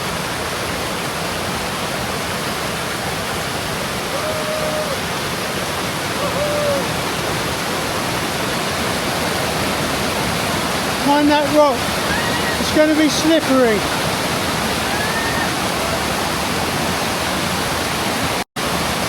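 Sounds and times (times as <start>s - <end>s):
stream rushing: 0.0s - 19.0s.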